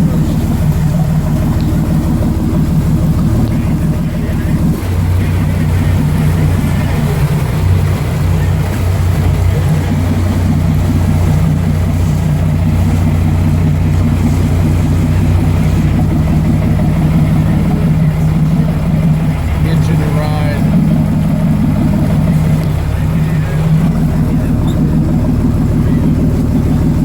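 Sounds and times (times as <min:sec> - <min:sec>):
boat engine running: 0:00.0 - 0:27.0.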